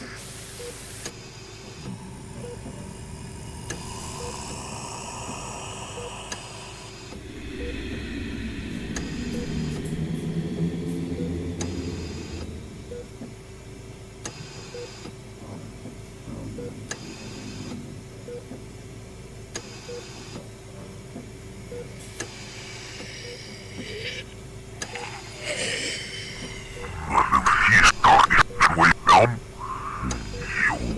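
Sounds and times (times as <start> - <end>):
electrical hum: 0.0 - 19.5, 20.7 - 30.9
wavering sliding tones: 7.1 - 13.6.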